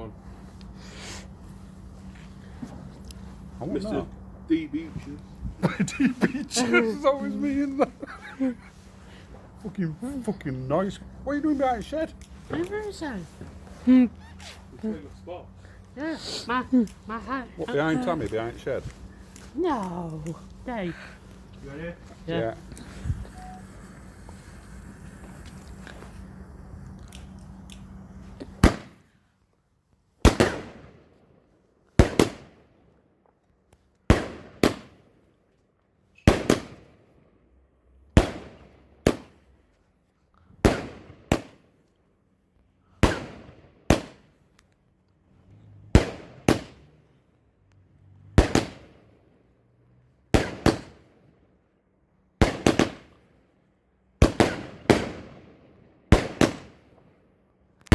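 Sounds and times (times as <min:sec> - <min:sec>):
firework hiss: 0:00.7 - 0:01.8, 0:21.2 - 0:29.0
firework bangs: 0:21.6 - 0:26.7, 0:28.2 - 0:29.0, 0:30.2 - 0:31.0, 0:32.0 - 0:32.6, 0:34.1 - 0:35.1, 0:36.3 - 0:37.0, 0:38.2 - 0:39.5, 0:40.6 - 0:41.6, 0:43.0 - 0:44.3, 0:45.9 - 0:46.8, 0:48.3 - 0:49.1, 0:50.3 - 0:51.1, 0:52.4 - 0:53.2, 0:54.2 - 0:57.0.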